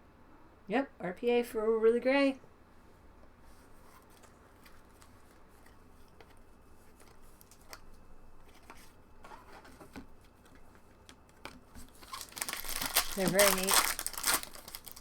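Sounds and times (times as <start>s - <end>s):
low room hum: 0.0s - 15.0s
cards clicking and rustling: 4.0s - 15.0s.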